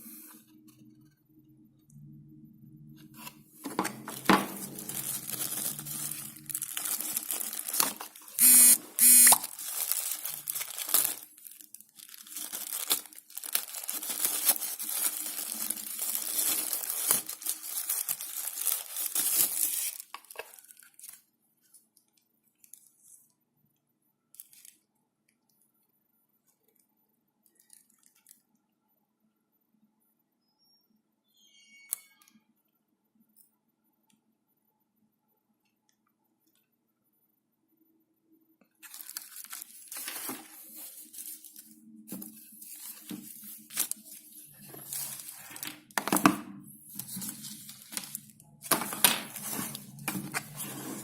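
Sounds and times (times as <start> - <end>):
packaging crinkling: 3.6 - 21.2, 38.8 - 51.0
packaging ripping: 4.0 - 21.2, 38.8 - 46.1, 46.9 - 51.0.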